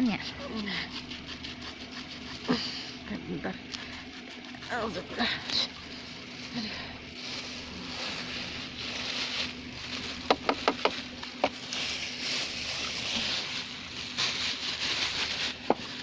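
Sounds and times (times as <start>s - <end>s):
rustling handling noise: 3.8s - 16.0s.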